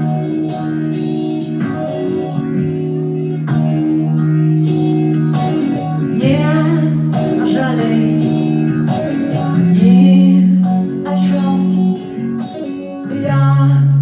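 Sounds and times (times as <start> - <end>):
guitar chords: 0.0 - 14.0
held bass notes: 0.0 - 14.0
person singing long wavering notes: 9.6 - 12.1.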